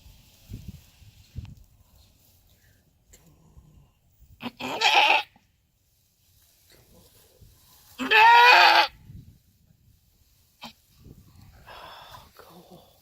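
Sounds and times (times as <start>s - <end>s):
goat bleating: 4.4s - 5.4s, 8.0s - 9.0s.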